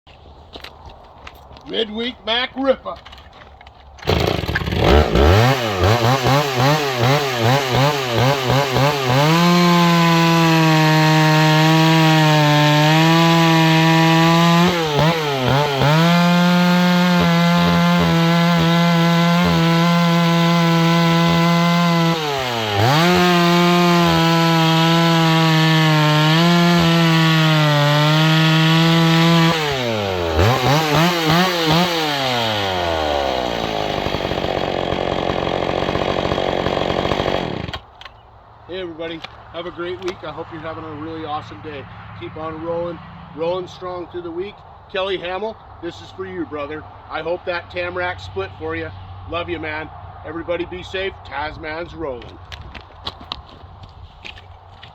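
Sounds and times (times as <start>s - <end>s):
chainsaw cutting wood: 3.8s - 38.2s, 39.1s - 41.1s
chainsaw revving: 4.0s - 37.9s.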